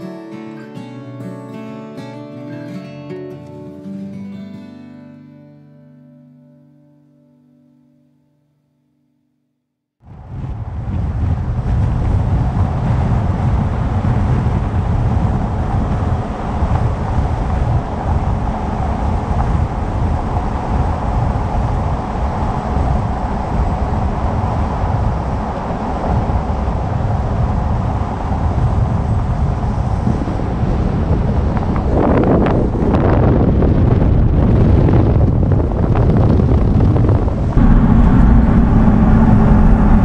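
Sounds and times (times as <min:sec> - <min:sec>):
vehicle road and engine noise: 0:36.1 - 0:40.0.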